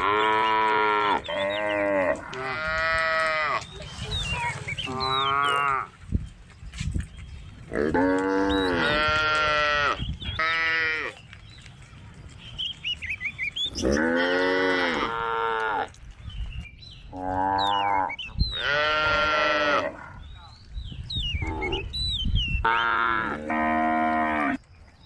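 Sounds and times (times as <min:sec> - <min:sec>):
small birds chirping: 0:00.0 - 0:02.3, 0:03.3 - 0:14.5, 0:16.0 - 0:23.2
cows mooing: 0:00.0 - 0:03.7, 0:04.9 - 0:06.0, 0:07.7 - 0:11.2, 0:13.7 - 0:15.9, 0:17.1 - 0:20.2, 0:22.6 - 0:24.6.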